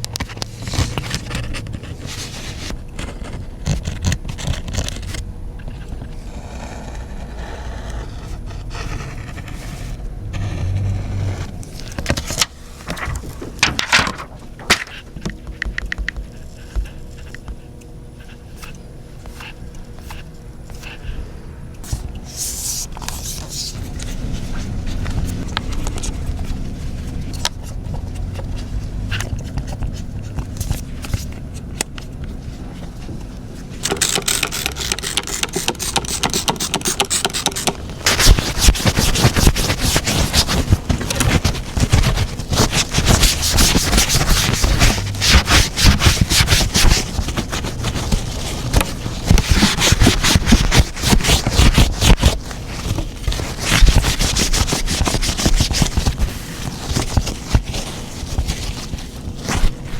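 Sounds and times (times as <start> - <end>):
low hum: 4.8 - 33.7.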